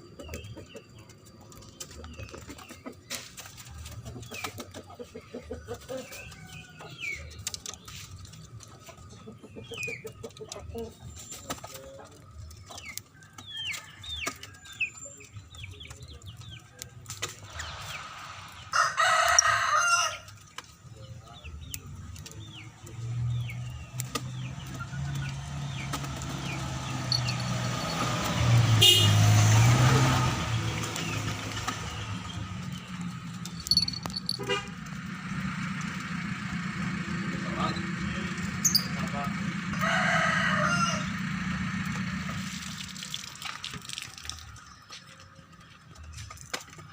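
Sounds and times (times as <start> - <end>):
vehicle engine hum: 0.0 - 46.9
rooster crowing: 18.7 - 20.3, 39.7 - 41.3
lovebirds chirping: 21.0 - 29.2, 30.8 - 34.7.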